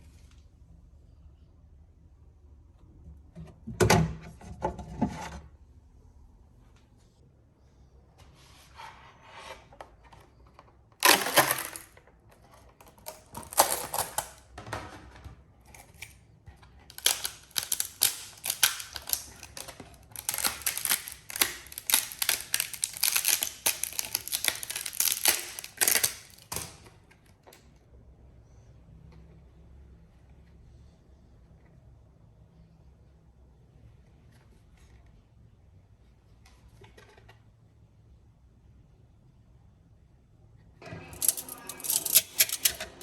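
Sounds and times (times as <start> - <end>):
hard objects scraping: 40.9 - 43.0.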